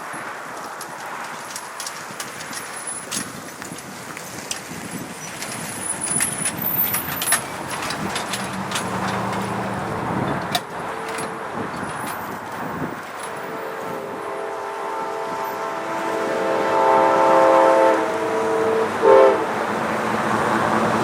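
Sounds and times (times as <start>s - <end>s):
wheels clicking over rail joints: 0.0s - 14.3s
train passing rush: 0.0s - 21.0s
low engine hum: 3.5s - 13.2s.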